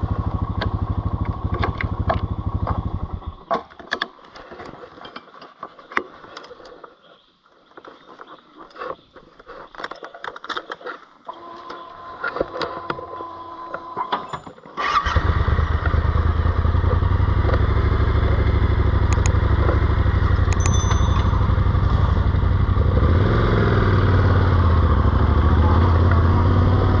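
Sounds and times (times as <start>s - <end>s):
motorcycle engine starting and idling: 0.0s - 3.5s, 11.6s - 27.0s
clicks: 19.1s - 19.4s, 20.4s - 21.5s.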